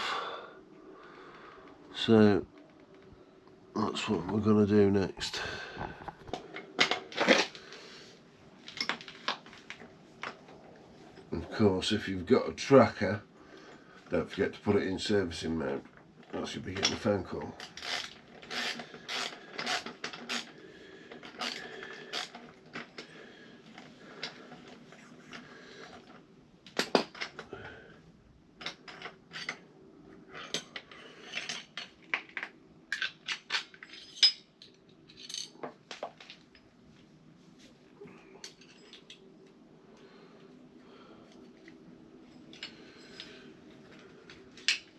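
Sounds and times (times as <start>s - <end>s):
faint steady hum: 0.0s - 44.9s
metal tools clinking: 30.4s - 32.0s, 32.9s - 35.8s, 38.4s - 39.3s, 42.2s - 43.6s.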